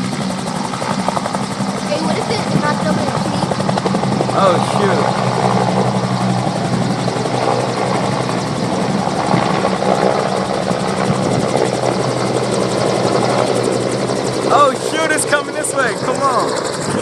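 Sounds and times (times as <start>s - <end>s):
helicopter rotor and engine: 0.0s - 17.0s.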